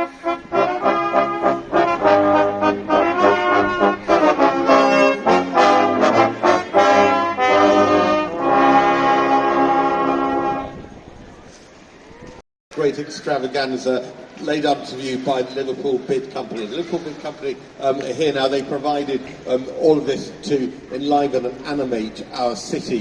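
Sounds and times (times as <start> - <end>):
brass band playing: 0.0 - 10.9.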